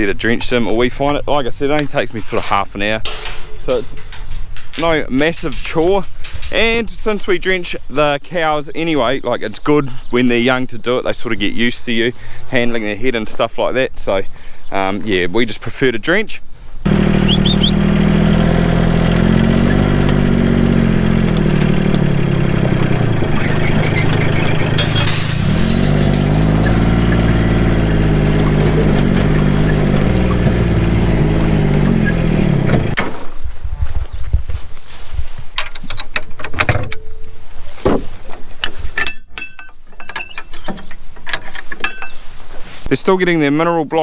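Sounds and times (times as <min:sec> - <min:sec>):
sharp rattle: 0:02.2 - 0:07.2, 0:16.9 - 0:33.0
vehicle engine running: 0:16.9 - 0:33.0.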